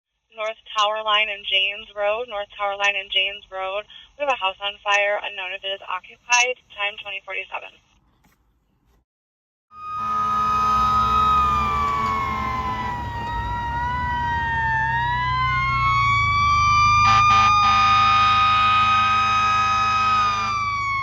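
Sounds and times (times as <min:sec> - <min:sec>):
fire engine siren wailing: 0:09.7 - 0:21.0
second siren tone sweeping: 0:09.7 - 0:21.0.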